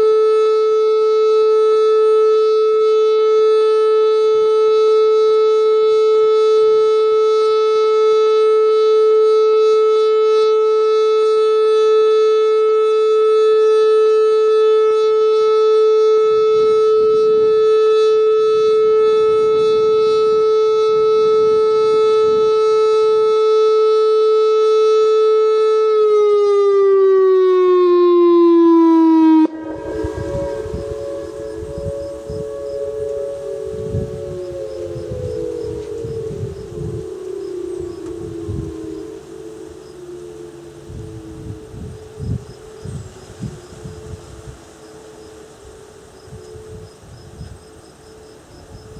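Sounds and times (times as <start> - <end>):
distant sirens: 0.0 - 48.9
electronic warning siren: 0.0 - 48.9.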